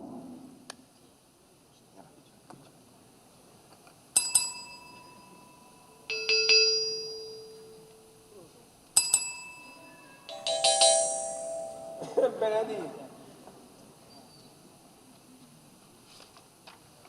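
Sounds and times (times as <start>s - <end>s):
small bell dinging: 4.2s - 8.3s, 9.0s - 12.0s.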